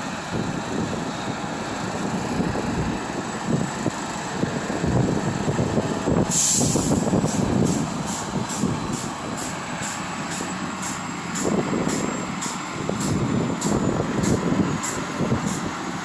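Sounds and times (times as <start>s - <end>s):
heavy truck rumbling: 0.0s - 16.0s
air brake hissing: 6.3s - 15.7s.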